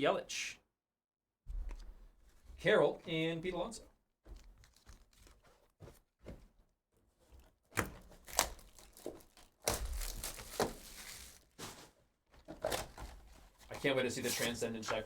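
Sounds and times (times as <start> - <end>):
foil wrappers crinkling and tearing: 4.3 - 5.7, 8.0 - 11.9.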